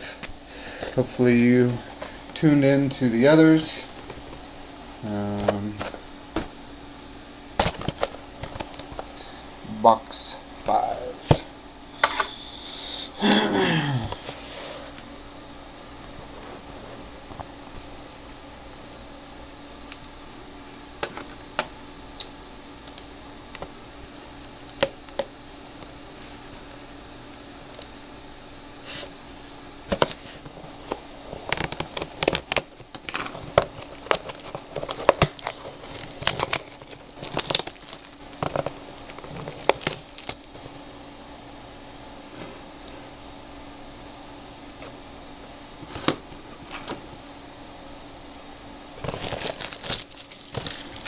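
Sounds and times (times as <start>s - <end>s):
plastic wrap crinkling and tearing: 31.3s - 40.6s, 49.0s - 51.0s.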